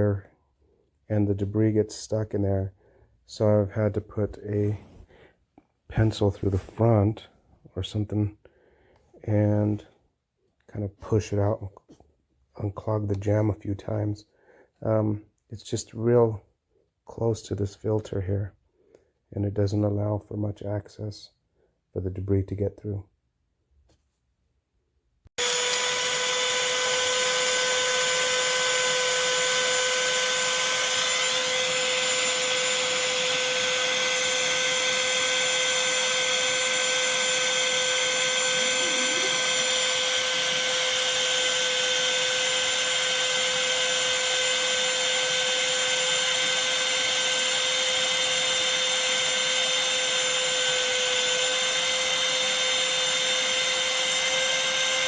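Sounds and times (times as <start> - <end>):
handheld vacuum motor whine: 25.4 - 55.0.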